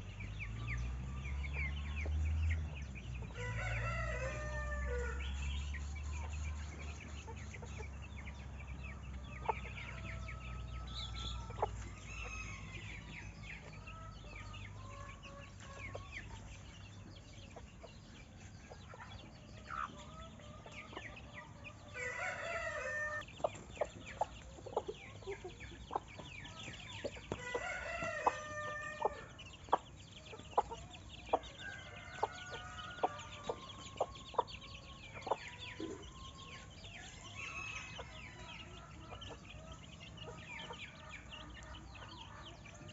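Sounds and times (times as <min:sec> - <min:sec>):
chickens clucking: 0:00.0 - 0:42.9
rooster crowing: 0:03.3 - 0:05.5, 0:09.8 - 0:13.2, 0:21.9 - 0:23.2, 0:27.4 - 0:29.3, 0:31.4 - 0:33.9, 0:36.9 - 0:38.7.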